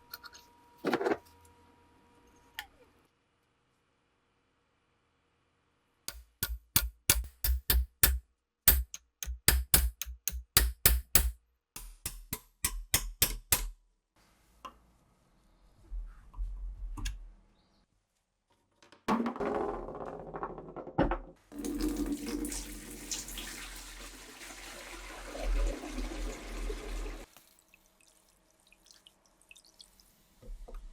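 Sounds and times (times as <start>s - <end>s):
water running from a tap: 21.5s - 30.1s.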